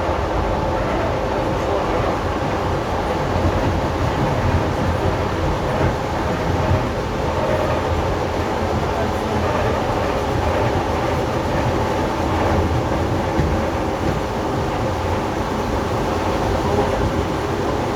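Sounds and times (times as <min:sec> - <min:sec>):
rumble of train wheels on rail: 0:00.0 - 0:17.9.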